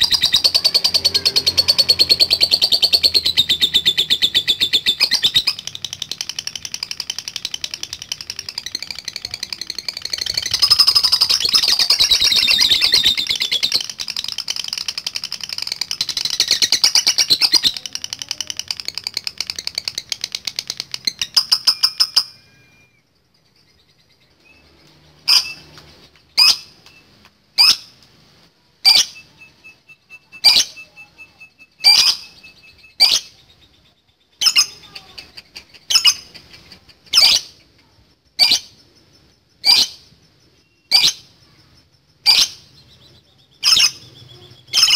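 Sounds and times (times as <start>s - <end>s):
bird chattering trill: 0.0s - 23.0s, 28.8s - 37.8s, 38.4s - 44.9s
sharp bird calls: 0.0s - 28.0s, 28.8s - 44.9s.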